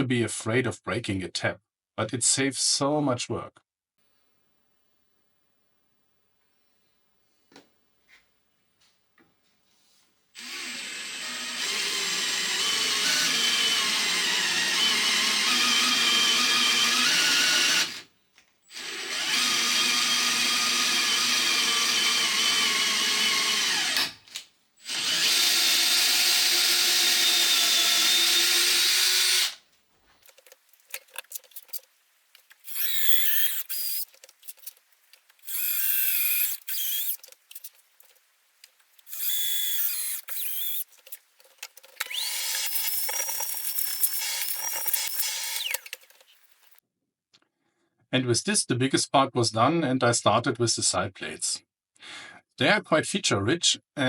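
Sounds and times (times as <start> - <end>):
cordless drill motor running: 10.4 - 18.1, 18.7 - 24.2, 24.8 - 29.6, 32.6 - 34.8, 35.4 - 37.7, 39.0 - 41.2, 42.0 - 46.8
drill clicks: 18.7 - 29.6, 30.2 - 46.8.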